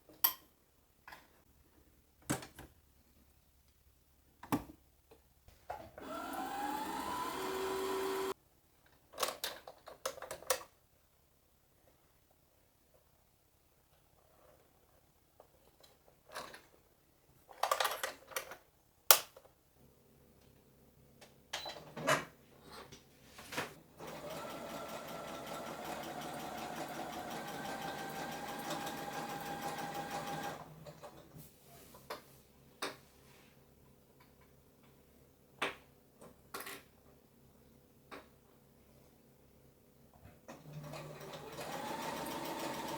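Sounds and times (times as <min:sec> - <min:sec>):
small electric motor running: 0:06.0 - 0:08.4.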